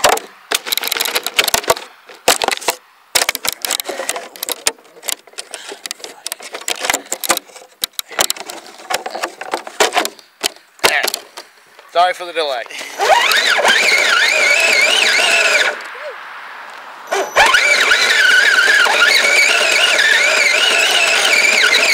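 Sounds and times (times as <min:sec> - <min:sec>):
plastic and metal parts clicking: 0:00.0 - 0:11.9.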